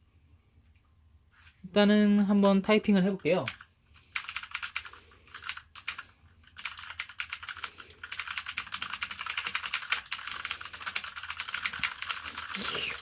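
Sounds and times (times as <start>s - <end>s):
clicky mechanical keyboard typing: 3.4s - 13.0s.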